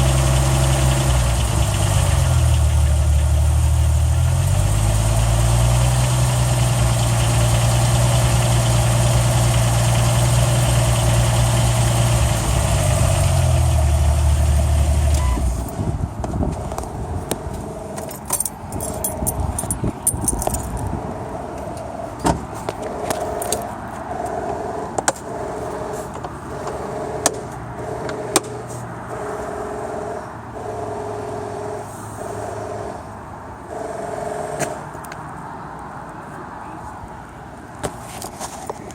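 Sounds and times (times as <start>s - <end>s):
car engine hum: 0.0s - 38.0s
pulsing tone: 22.9s - 34.8s.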